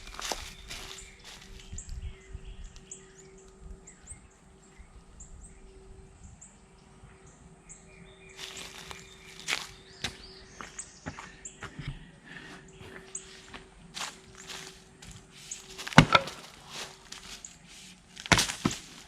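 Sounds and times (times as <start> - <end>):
rustling shuffle: 0.0 - 2.0, 8.4 - 10.2, 12.8 - 19.0
birds chirping: 0.0 - 19.0
faint steady hum: 0.0 - 19.0.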